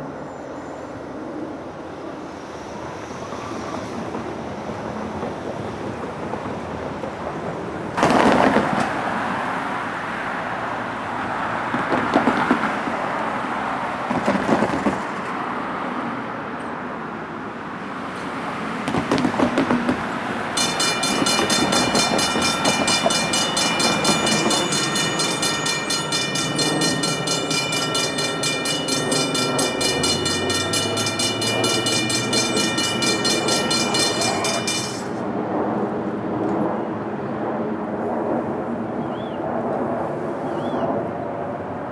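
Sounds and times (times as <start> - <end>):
railroad bell ringing: 0.0 - 2.9, 20.6 - 35.2
train rumbling by: 0.0 - 16.2, 17.8 - 37.4
train wheels clattering: 20.6 - 35.2.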